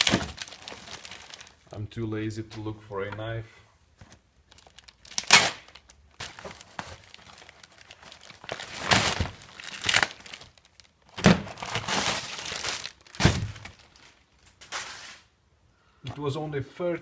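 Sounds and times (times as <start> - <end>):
packaging being torn open: 4.5 - 14.1.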